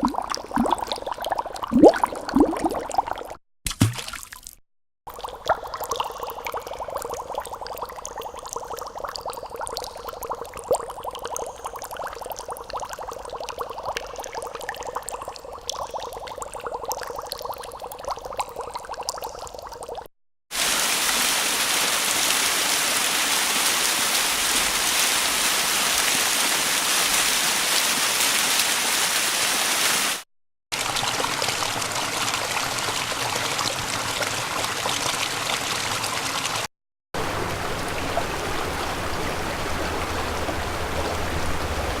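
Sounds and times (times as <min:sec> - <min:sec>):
bubbling water: 0:00.0 - 0:04.4, 0:05.1 - 0:20.1, 0:37.2 - 0:42.0
rushing water: 0:20.5 - 0:42.0.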